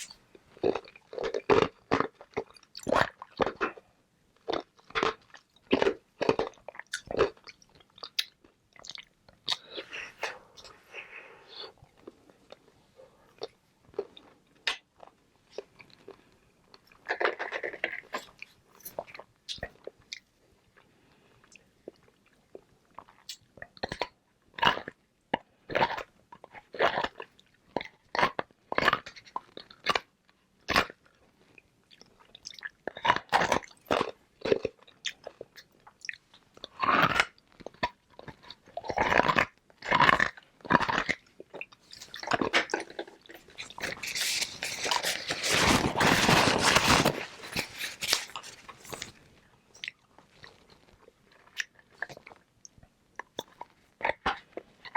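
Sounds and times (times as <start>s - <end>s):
ice balls being crunched: 43.4s - 49.2s.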